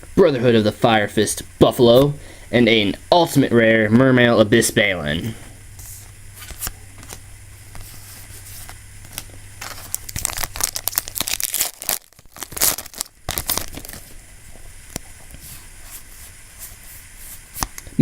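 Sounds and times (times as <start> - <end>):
foil pack tearing and crinkling: 5.8 - 14.2.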